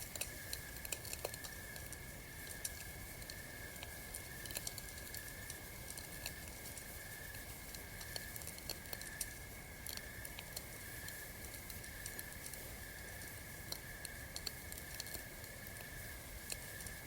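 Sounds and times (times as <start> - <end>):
campfire crackling: 0.0 - 17.0.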